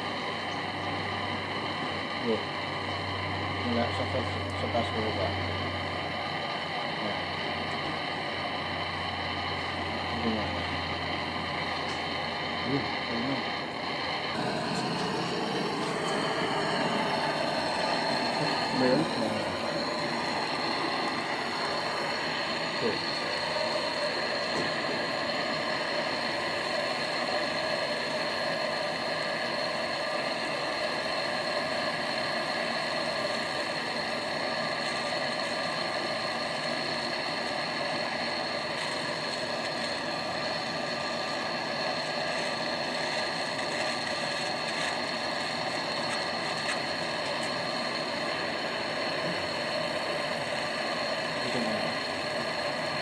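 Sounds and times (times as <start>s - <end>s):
machine humming: 0.0s - 53.0s.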